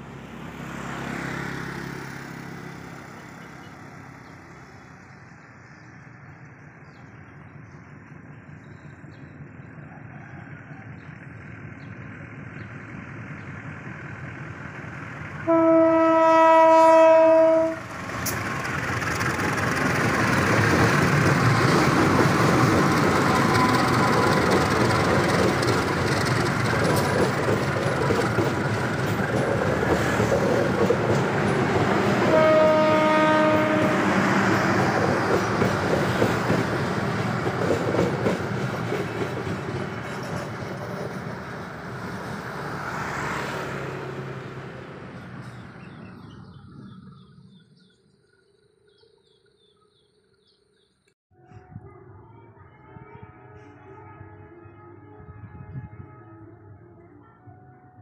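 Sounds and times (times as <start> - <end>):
train rumble and wheel clatter: 0.0 - 47.9
locomotive horn blast: 15.4 - 18.0, 31.5 - 34.5, 53.6 - 56.9.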